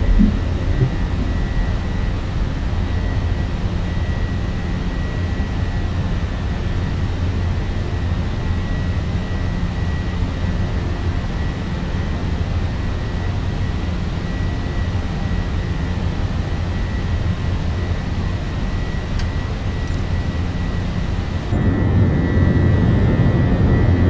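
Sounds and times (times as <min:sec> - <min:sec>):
jet engines rumbling: 0:00.0 - 0:03.6
high engine whine: 0:00.0 - 0:24.0.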